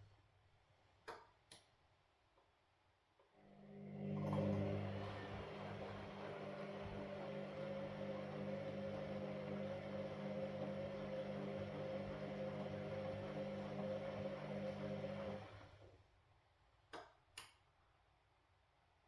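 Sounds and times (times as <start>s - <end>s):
washing machine humming: 3.4s - 16.0s.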